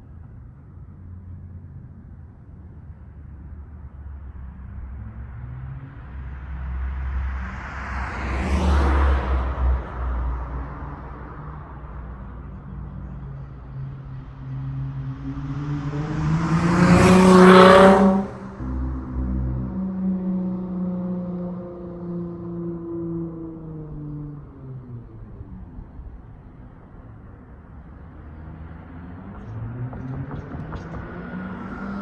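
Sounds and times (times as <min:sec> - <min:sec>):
car driving past: 0:04.5 - 0:32.0.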